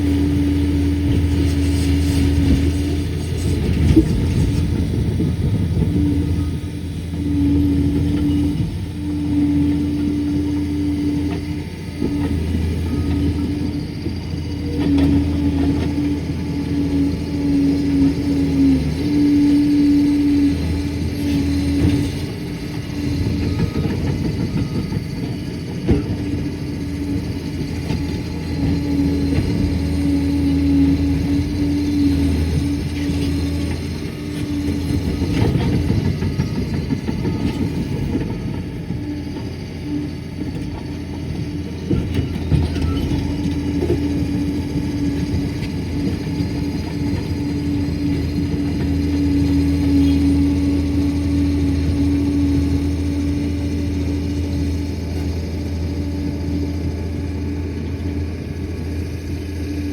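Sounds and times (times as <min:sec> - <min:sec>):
diesel engine humming: 0:00.0 - 0:59.9
steel tracks clanking: 0:00.0 - 0:59.9.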